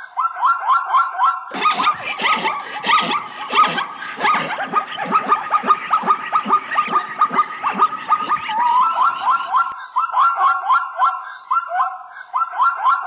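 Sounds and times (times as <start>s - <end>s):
rapid animal calls: 1.5s - 9.8s.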